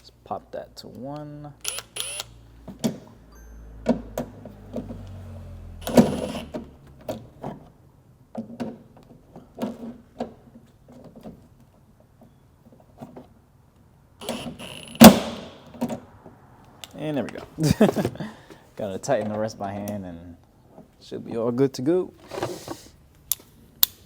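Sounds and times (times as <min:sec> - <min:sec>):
tools and parts clicking: 0:01.6 - 0:02.3, 0:05.8 - 0:07.2, 0:23.2 - 0:24.0
power driver motor hum: 0:01.6 - 0:02.4, 0:04.9 - 0:06.7, 0:14.2 - 0:15.4.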